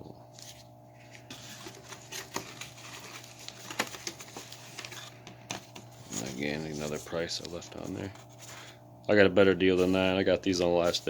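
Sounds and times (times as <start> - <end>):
faint steady hum: 0.0 - 11.0
boxes rustling and clicking: 0.4 - 8.6.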